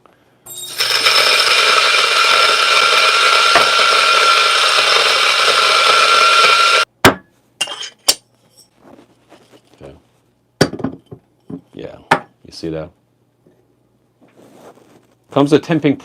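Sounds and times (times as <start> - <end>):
electric coffee grinder whining: 0.5 - 6.9.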